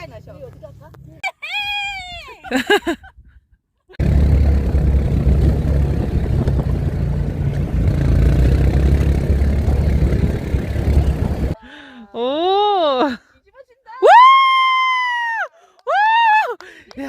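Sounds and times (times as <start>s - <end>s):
quad bike engine running: 4.0s - 11.6s.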